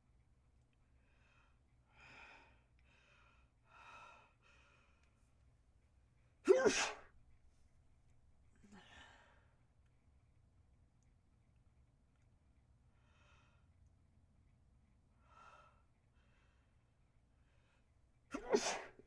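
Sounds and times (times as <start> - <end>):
person sneezing: 6.5 - 7.0, 18.3 - 19.0.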